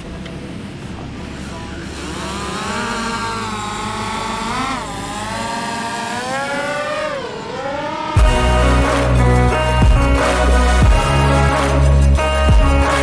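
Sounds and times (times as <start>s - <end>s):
small motor whining: 1.8s - 10.8s.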